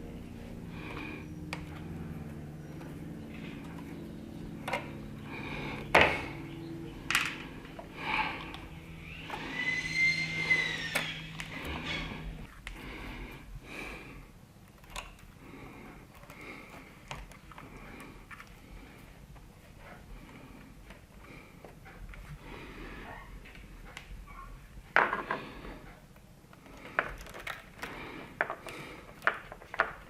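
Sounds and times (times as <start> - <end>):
steady low hum: 0.0 - 30.0
short squeak: 9.4 - 12.3.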